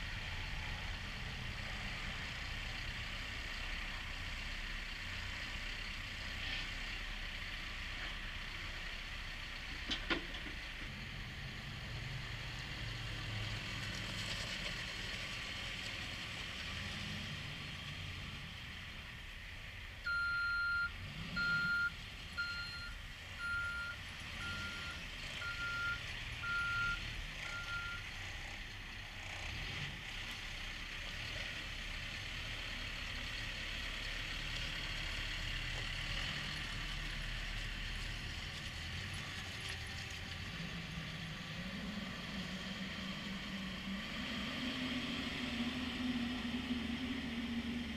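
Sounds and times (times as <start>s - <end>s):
diesel engine running: 0.0s - 47.9s
reversing alarm beeps: 20.1s - 28.0s.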